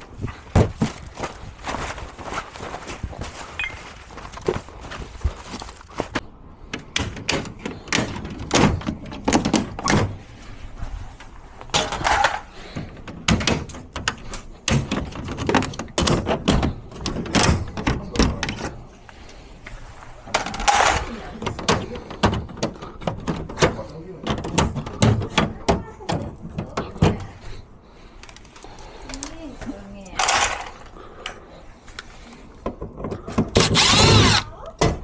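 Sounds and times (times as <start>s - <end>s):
knocks and thuds of objects: 0.0s - 10.3s, 11.7s - 18.8s, 20.3s - 27.4s
indistinct talk: 20.7s - 28.1s.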